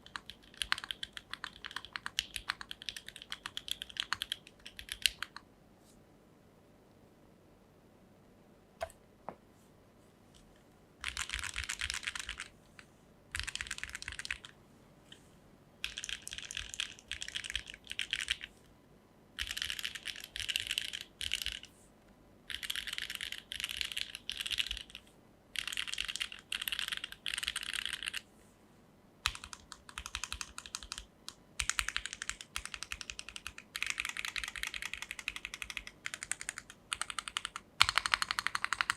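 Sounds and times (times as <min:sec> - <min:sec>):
mechanical keyboard typing: 0:00.0 - 0:05.5, 0:11.0 - 0:12.5, 0:13.3 - 0:14.6, 0:15.8 - 0:18.5, 0:19.4 - 0:21.7, 0:22.5 - 0:25.0, 0:25.6 - 0:28.2, 0:29.2 - 0:38.9.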